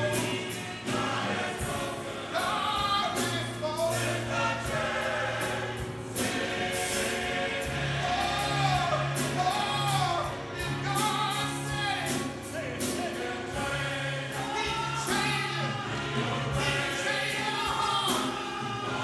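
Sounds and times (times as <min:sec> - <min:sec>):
choir singing gospel: 0:00.0 - 0:19.0.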